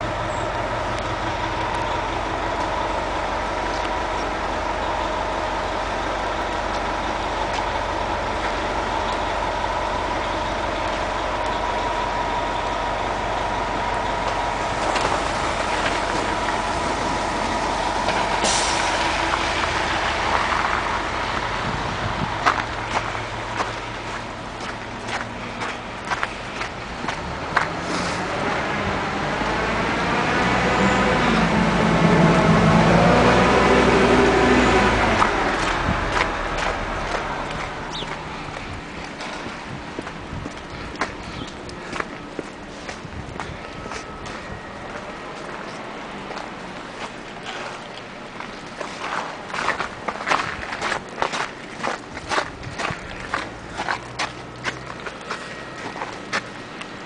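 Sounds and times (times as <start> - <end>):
footsteps crunching through snow: 35.6 - 56.5.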